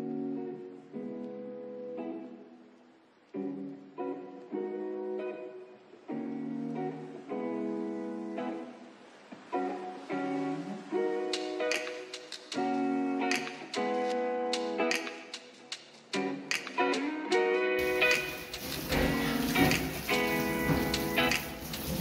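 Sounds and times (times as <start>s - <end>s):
acoustic guitar chords: 17.8s - 22.0s.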